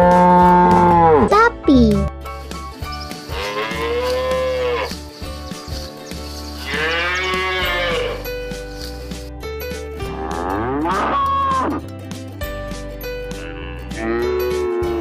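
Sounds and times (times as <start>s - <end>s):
children's background music: 0.0s - 15.0s
cow mooing: 3.3s - 4.9s, 6.7s - 8.2s, 10.1s - 11.8s, 13.4s - 15.0s.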